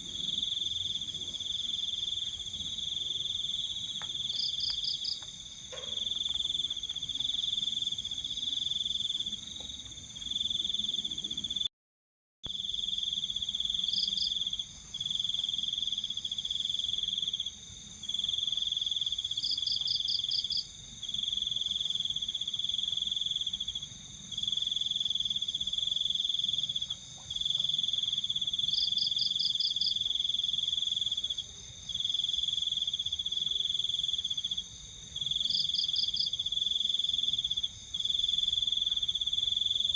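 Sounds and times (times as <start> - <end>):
loud cricket trill: 12.5 - 39.9.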